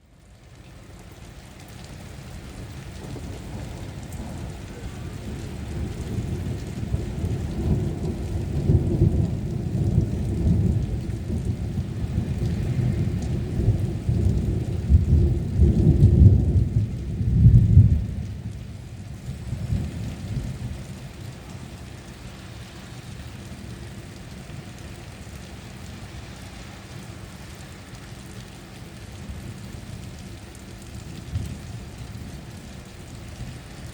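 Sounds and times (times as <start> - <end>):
steady rain: 0.0 - 33.9
thunder rumbling: 2.1 - 22.8.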